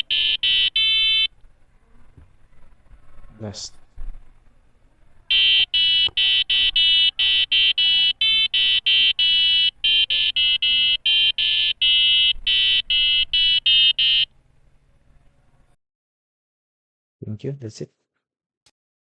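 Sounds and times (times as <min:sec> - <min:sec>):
buzzer beeping a melody: 0:00.0 - 0:01.3, 0:05.3 - 0:14.3.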